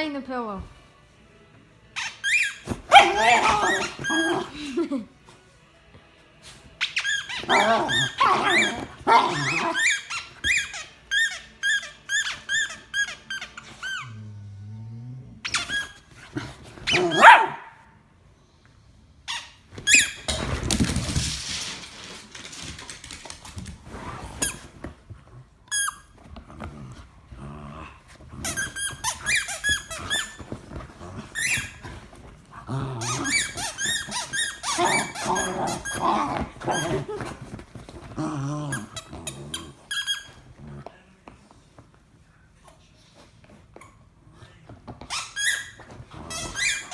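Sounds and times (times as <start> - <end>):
dog high-pitched squeaks: 2.0 - 4.5, 6.8 - 14.1, 15.5 - 16.0, 16.8 - 17.6, 19.3 - 20.3, 28.5 - 30.4, 33.1 - 36.1, 45.1 - 46.9.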